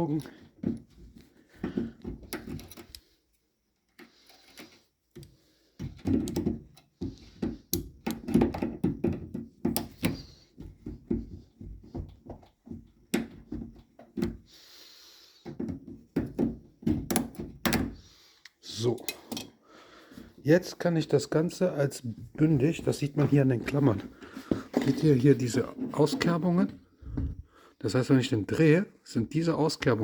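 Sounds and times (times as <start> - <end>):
pliers clicking and knocking on hose: 1.7 - 3.1, 3.8 - 11.2, 15.5 - 19.6.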